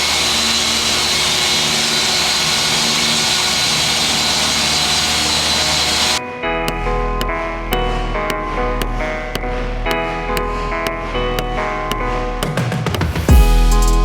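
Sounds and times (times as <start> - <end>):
whooshing machine with whine: 0.0 - 6.2
music with regular beat: 12.4 - 14.0.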